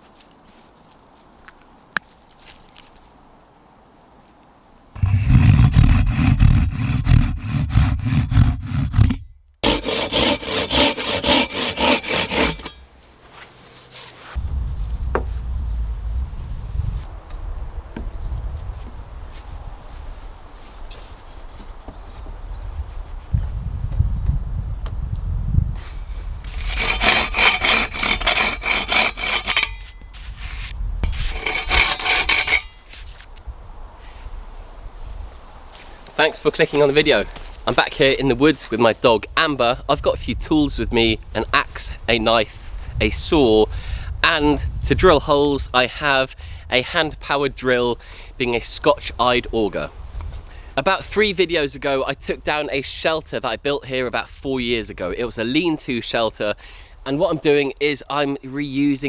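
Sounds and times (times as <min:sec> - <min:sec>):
hand saw cutting wood: 0:05.0 - 0:12.8, 0:26.5 - 0:32.9.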